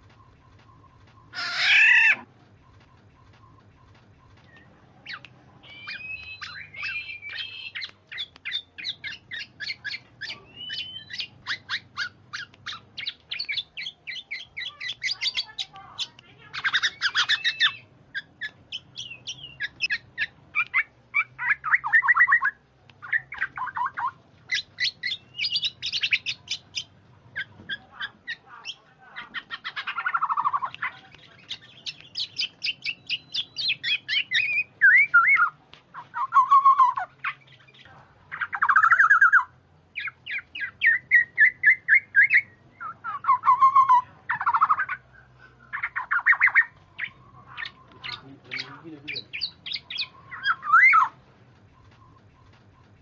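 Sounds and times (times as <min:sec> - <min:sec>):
bird chattering chirps: 0:00.0 - 0:53.0
harsh falling bird squawks: 0:00.8 - 0:02.3.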